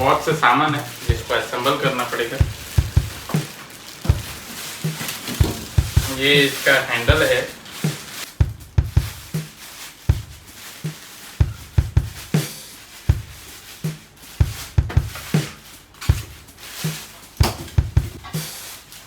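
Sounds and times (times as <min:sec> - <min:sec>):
background music with drum beat: 0:00.0 - 0:19.0.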